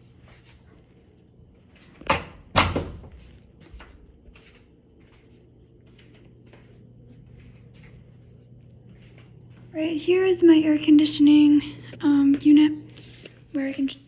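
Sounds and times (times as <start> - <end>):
door shutting knocks: 2.1 - 3.1.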